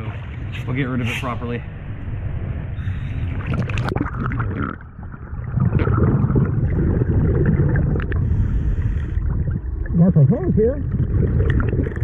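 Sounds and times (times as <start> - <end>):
bubbles gurgling underwater: 3.3 - 8.5, 9.2 - 12.0
diver breathing through regulator: 8.1 - 9.3.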